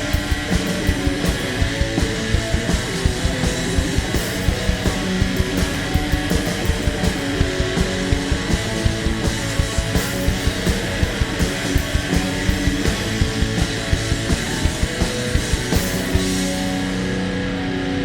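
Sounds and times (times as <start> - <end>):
distorted electric guitar: 0.0 - 18.0
driving drum beat: 0.0 - 18.0.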